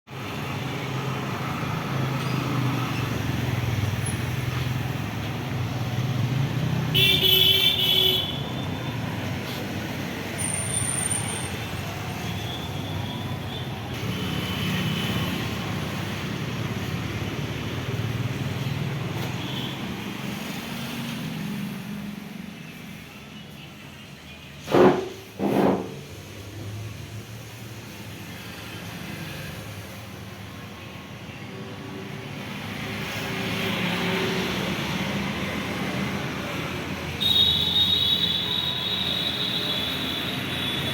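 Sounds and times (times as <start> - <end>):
road traffic rumbling: 0.1 - 40.9
vehicle horn: 6.9 - 8.5, 37.2 - 40.9.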